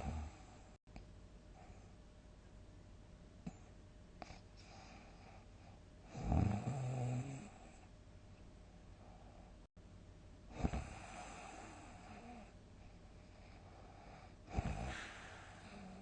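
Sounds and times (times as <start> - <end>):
person snoring: 6.1 - 7.6, 14.5 - 16.0.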